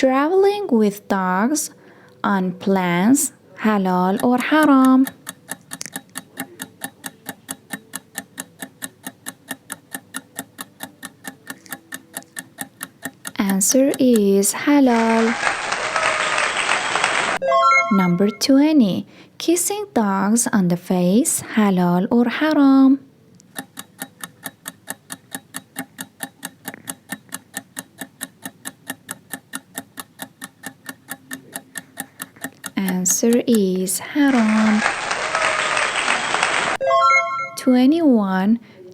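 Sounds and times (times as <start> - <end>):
fast clock ticking: 2.4 - 16.2, 22.4 - 36.8.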